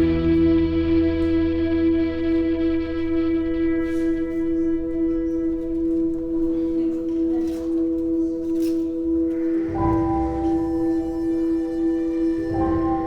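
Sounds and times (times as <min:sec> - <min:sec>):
sustained music note: 0:09.3 - 0:13.0.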